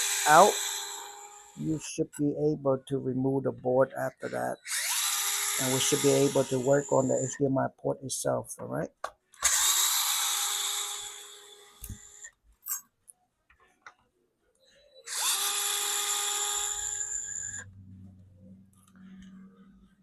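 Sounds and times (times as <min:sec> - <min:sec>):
electric screwdriver whine: 0:00.0 - 0:01.6, 0:04.6 - 0:07.2, 0:09.4 - 0:12.3, 0:15.1 - 0:17.6.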